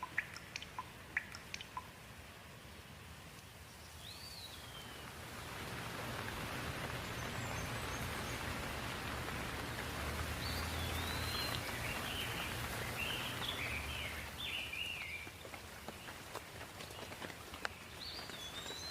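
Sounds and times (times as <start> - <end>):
bird chirping: 0.0 - 2.0, 3.6 - 5.1, 6.9 - 9.0, 10.3 - 16.2, 16.9 - 18.9
steady rainfall: 0.0 - 18.9.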